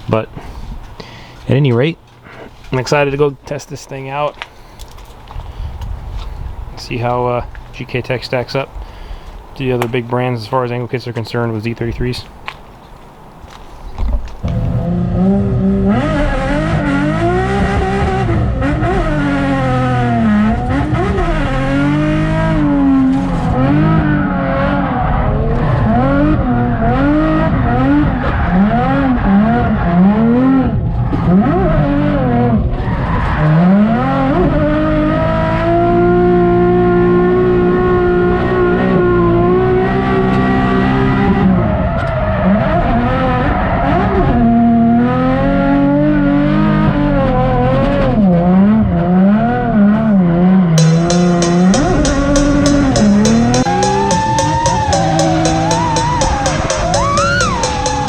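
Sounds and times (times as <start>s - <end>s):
car engine revving: 14.4s - 41.8s, 42.4s - 58.0s
tyre squeal: 52.5s - 58.0s.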